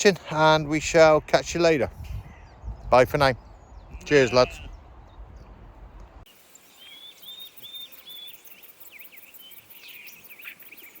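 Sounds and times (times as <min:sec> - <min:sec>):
birds chirping and twittering: 0:00.0 - 0:11.0
wind rumble on microphone: 0:00.5 - 0:06.3.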